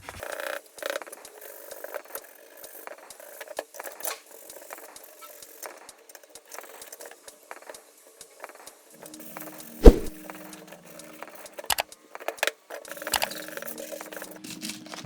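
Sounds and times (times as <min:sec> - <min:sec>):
small hard parts clicking: 0:10.8 - 0:15.0.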